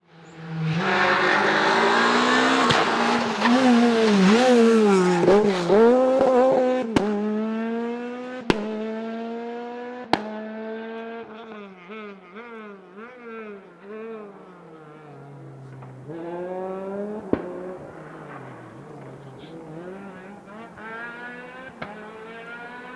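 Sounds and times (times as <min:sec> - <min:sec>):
rally car engine at high revs: 0:00.0 - 0:22.9
sharp exhaust pops: 0:02.4 - 0:06.4, 0:13.8 - 0:22.9.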